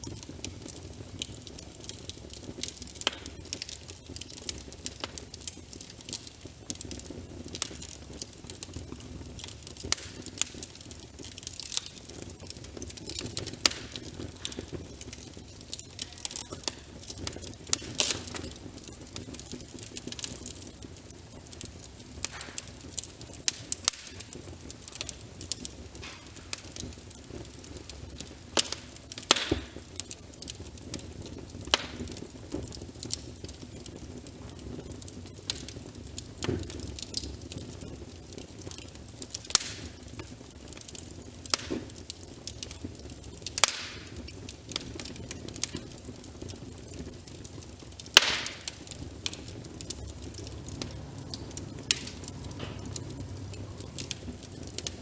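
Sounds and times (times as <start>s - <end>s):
wood fire crackling and popping: 0.0s - 55.0s
rain hissing: 47.6s - 55.0s.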